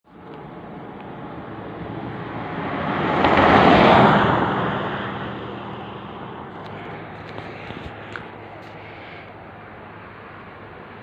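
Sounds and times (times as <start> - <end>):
vehicle passing by: 1.1 - 11.0.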